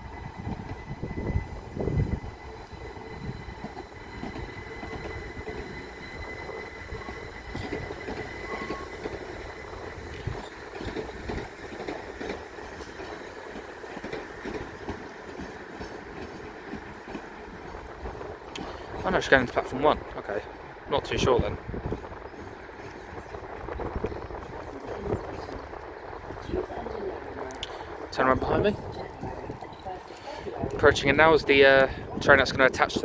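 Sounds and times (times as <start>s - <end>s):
thin steady whine: 0.0s - 15.8s
electric train moving slowly: 0.0s - 33.0s.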